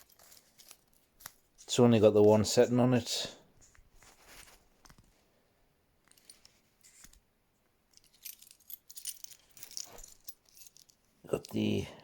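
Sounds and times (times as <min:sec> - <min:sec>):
keychain clicks and rustles: 0:00.0 - 0:01.4, 0:06.0 - 0:07.0, 0:07.9 - 0:11.7.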